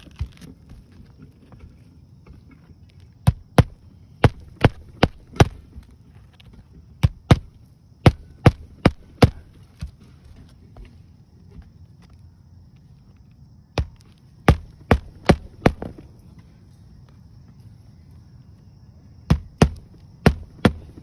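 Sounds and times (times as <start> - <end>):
hammer striking roofing nails: 3.2 - 5.7, 7.0 - 9.9, 13.8 - 16.0, 19.3 - 21.0.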